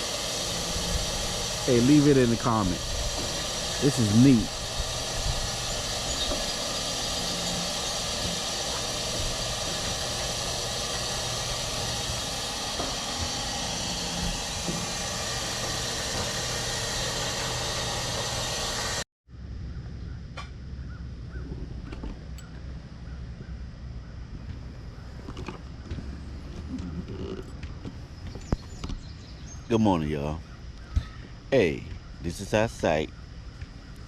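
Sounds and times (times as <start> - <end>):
loud engine noise: 0.0 - 19.1.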